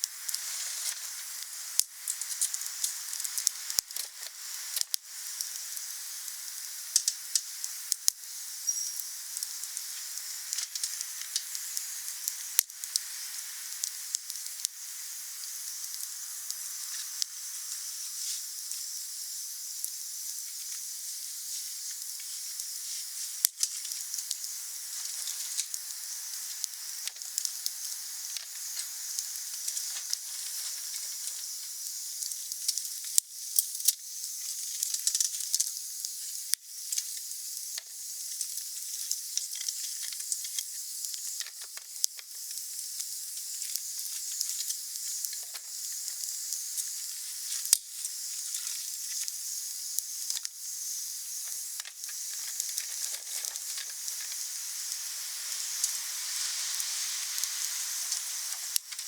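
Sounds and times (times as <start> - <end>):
wood fire crackling: 0.0 - 19.1, 19.7 - 59.0.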